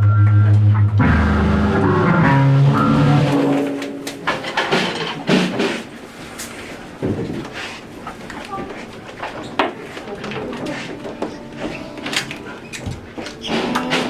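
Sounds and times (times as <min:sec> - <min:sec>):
electric guitar and bass notes: 0:00.0 - 0:05.1
clicks and knocks: 0:03.8 - 0:05.9.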